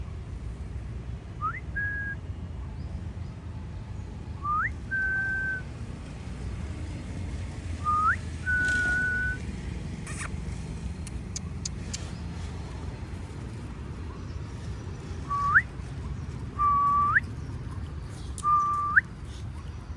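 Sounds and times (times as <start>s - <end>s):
rising whistle: 4.4s - 5.7s, 7.8s - 9.4s, 16.6s - 17.2s.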